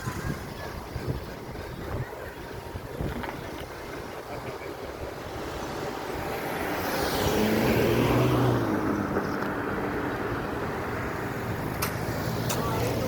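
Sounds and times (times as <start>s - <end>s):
vehicle passing by: 5.1s - 13.0s.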